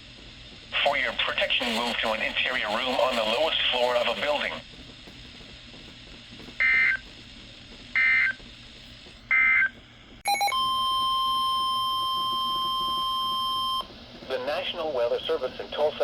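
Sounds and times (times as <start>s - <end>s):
steady warning alarm tone: 6.6s - 7.1s, 7.9s - 8.4s, 9.3s - 13.9s.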